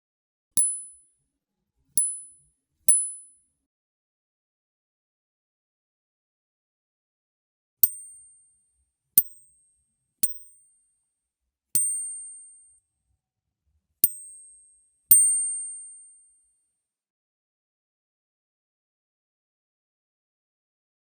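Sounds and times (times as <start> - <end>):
metal coin clinking and ringing: 10.2 - 10.5.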